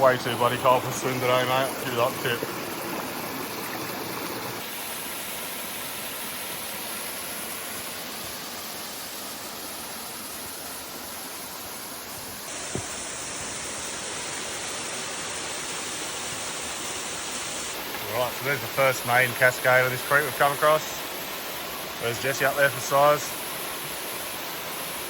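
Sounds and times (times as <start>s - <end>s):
creek water rushing over rocks: 0.0s - 25.0s.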